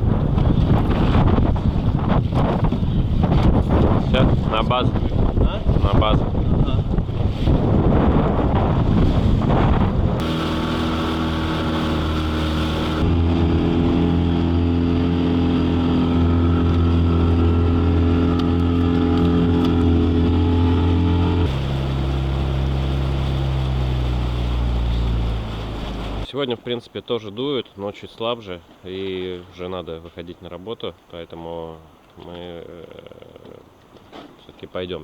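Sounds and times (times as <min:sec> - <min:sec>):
wind on microphone: 0:00.0 - 0:26.3
outboard motor running: 0:08.8 - 0:26.3.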